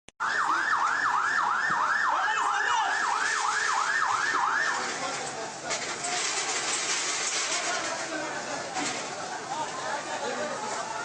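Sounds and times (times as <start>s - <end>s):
emergency siren yelping: 0.2s - 5.0s
street noise: 0.2s - 11.0s.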